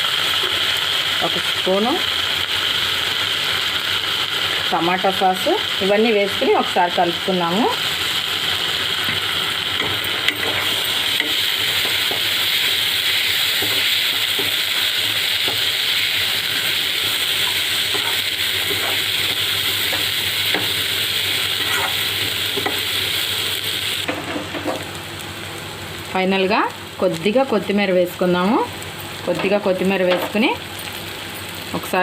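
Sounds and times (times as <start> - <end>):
vegetables sizzling in a pan: 0.0 - 32.0
spoon scraping a pan: 9.8 - 12.3, 17.4 - 20.8, 21.6 - 22.8.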